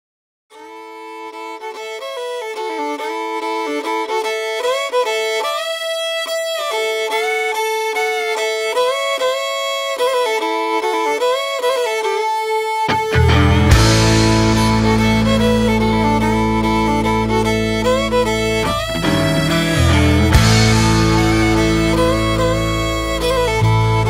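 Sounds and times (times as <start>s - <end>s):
fiddle playing a melody: 0.5s - 24.0s
country band playing: 12.9s - 24.0s.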